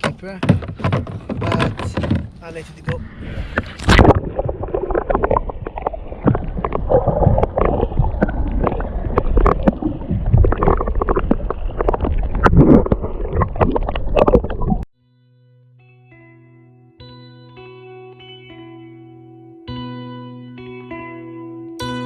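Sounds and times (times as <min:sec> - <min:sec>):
water splashing against kayak: 0:00.0 - 0:14.9
wind rumble on microphone: 0:02.8 - 0:14.8.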